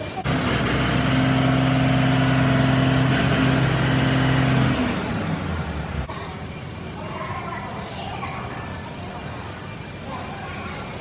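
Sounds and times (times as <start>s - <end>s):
engine humming: 0.0s - 6.1s.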